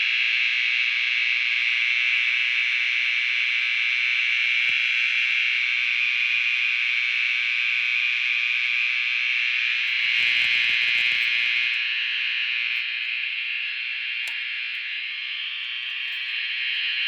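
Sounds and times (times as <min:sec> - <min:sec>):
high-pitched buzzing fire alarm: 0:00.0 - 0:17.0.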